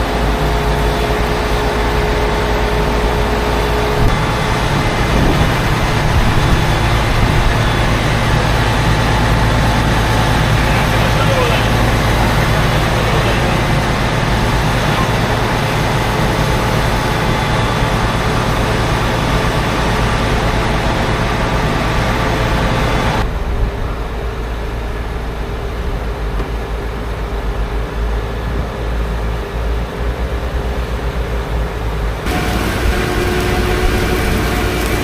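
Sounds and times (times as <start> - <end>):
heavy farm machinery engines: 0.0 - 35.0.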